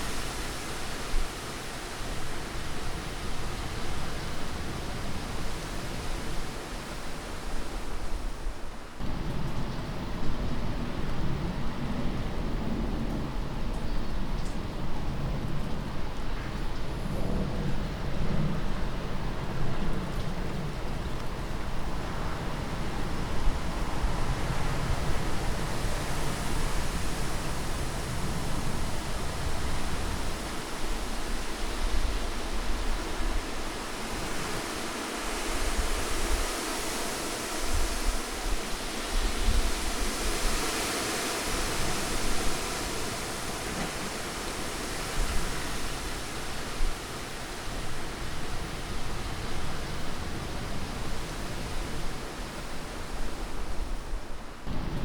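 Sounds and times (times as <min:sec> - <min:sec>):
continuous rushing noise: 0:00.0 - 0:55.0
hiss: 0:23.8 - 0:54.5.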